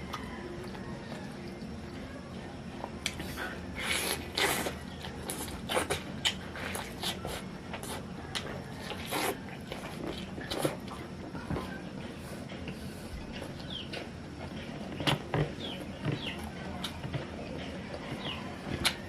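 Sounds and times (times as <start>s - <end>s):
person chewing: 3.0s - 11.6s.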